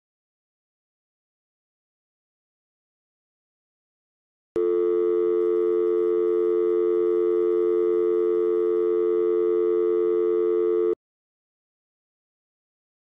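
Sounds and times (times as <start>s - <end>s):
telephone dial tone: 4.6s - 11.0s.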